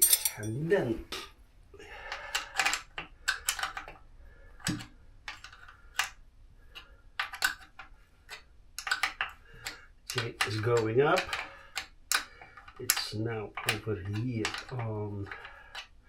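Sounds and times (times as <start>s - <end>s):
hand tools clicking on metal: 0.0s - 0.5s.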